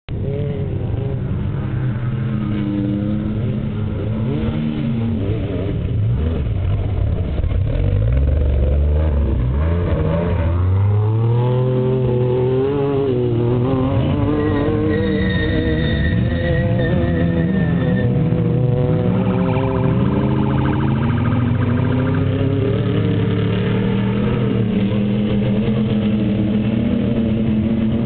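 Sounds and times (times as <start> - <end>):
truck engines revving: 0.1 - 28.0.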